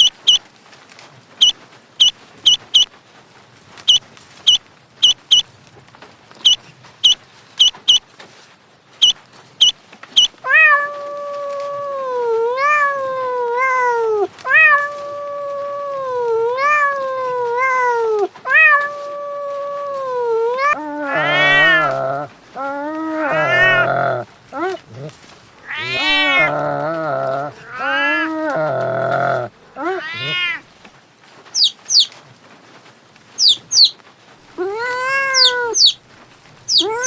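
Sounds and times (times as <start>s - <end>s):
high-pitched squeaks: 3.9s - 5.4s, 6.4s - 8.0s, 31.6s - 32.1s, 33.4s - 34.0s, 34.7s - 36.0s, 36.7s - 37.0s
cat yowling: 10.2s - 30.7s, 31.6s - 32.1s, 33.4s - 36.0s, 36.7s - 37.0s.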